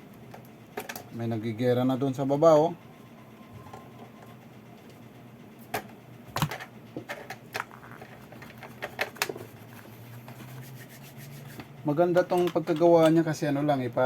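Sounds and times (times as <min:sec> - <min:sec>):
sharp clicks and light knocks: 0:12.3 - 0:13.8.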